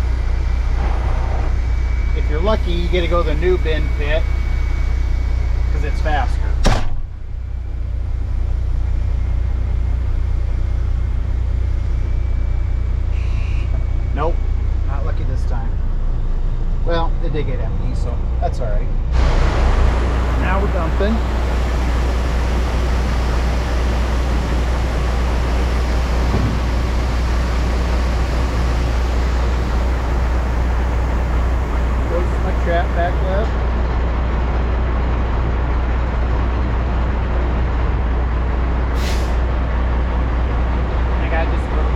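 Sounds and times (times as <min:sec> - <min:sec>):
diesel truck engine droning: 0:00.0 - 0:41.9.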